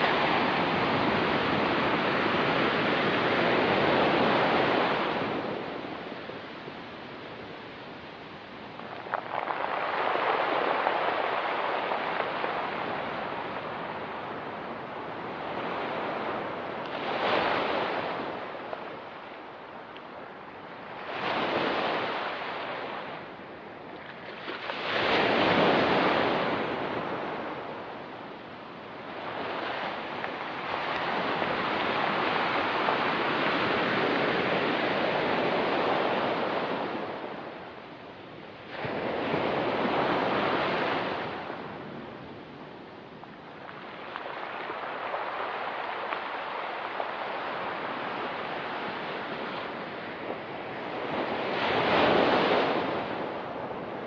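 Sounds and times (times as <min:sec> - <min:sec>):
surf washing over pebbly shore: 0:07.8 - 0:23.3.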